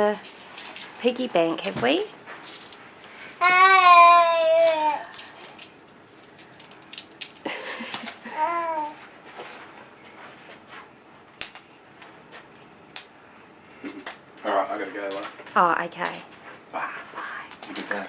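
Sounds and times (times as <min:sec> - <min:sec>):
coins clinking: 0:00.0 - 0:00.9, 0:02.4 - 0:02.8, 0:04.6 - 0:09.7
child vocalizing: 0:03.4 - 0:05.2, 0:08.3 - 0:09.0.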